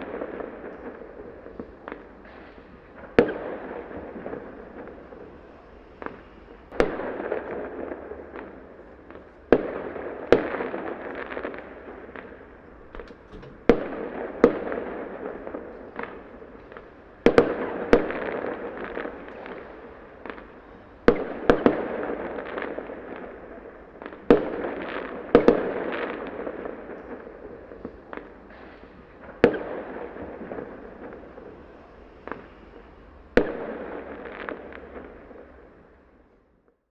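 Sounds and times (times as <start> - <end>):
fireworks bangs: 0.0 - 32.7.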